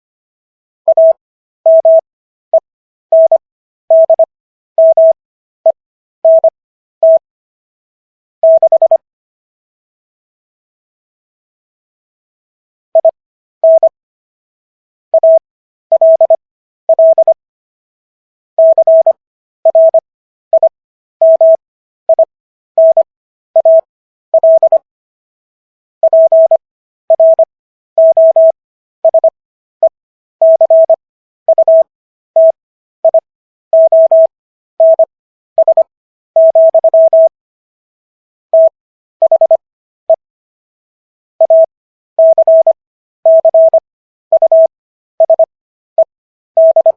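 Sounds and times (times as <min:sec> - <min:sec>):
morse code electronic tone: 0:00.9 - 0:02.0, 0:03.2 - 0:05.2, 0:15.2 - 0:17.4, 0:20.6 - 0:24.8, 0:26.0 - 0:33.2, 0:33.8 - 0:37.3, 0:38.6 - 0:40.2, 0:41.4 - 0:46.9.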